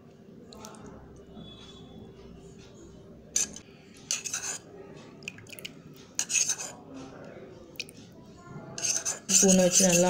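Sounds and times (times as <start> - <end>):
spoon scraping a bowl: 3.3 - 4.7, 6.2 - 6.8, 8.8 - 10.0.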